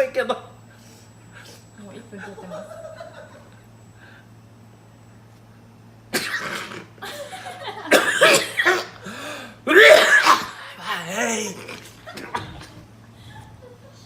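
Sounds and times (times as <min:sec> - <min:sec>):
man coughing: 0:06.1 - 0:07.0, 0:07.9 - 0:10.8.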